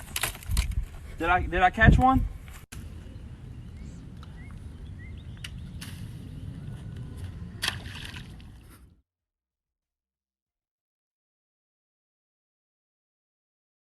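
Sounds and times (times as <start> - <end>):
steady low rumble: 2.2 - 9.0.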